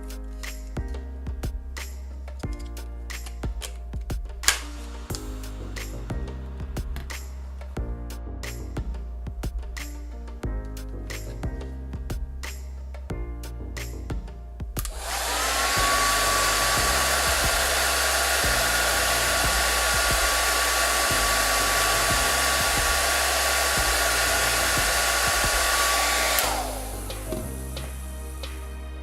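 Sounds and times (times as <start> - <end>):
hair dryer fan whine: 14.8 - 28.4
rush of blown air: 14.9 - 28.5.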